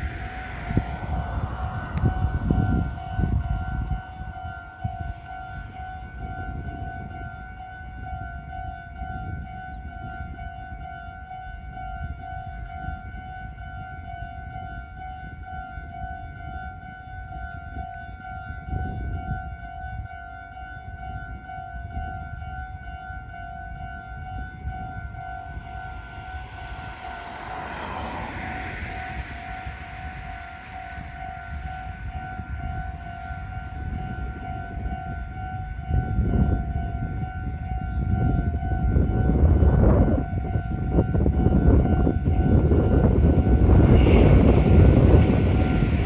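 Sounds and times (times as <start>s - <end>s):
low rumble: 0.0s - 8.2s, 24.1s - 46.0s.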